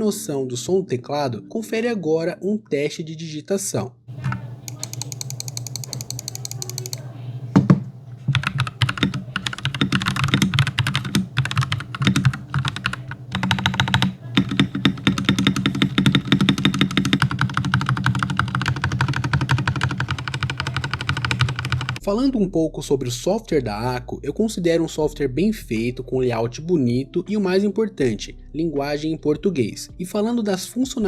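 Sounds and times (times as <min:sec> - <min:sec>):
fast typing on mechanical keyboard: 0:04.1 - 0:07.0, 0:08.3 - 0:22.0.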